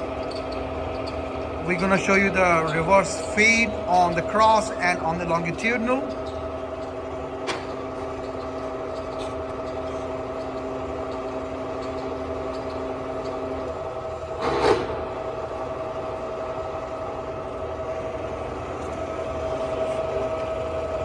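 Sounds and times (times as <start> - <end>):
lathe gear train whine: 0.0 - 21.0.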